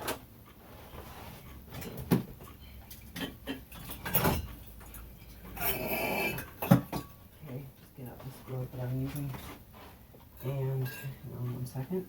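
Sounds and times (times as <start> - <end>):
knocks and rustles from handling: 0.0 - 5.5, 6.4 - 7.2, 8.2 - 10.4.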